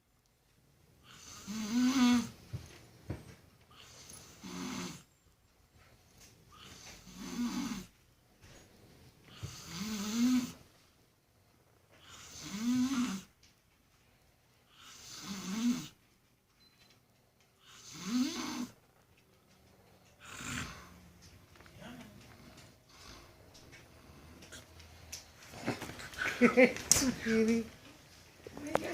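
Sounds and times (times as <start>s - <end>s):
baboon snoring: 1.0s - 2.4s, 3.7s - 5.1s, 6.5s - 7.9s, 9.3s - 10.6s, 12.0s - 13.3s, 14.7s - 16.0s, 17.6s - 18.8s, 20.2s - 21.1s.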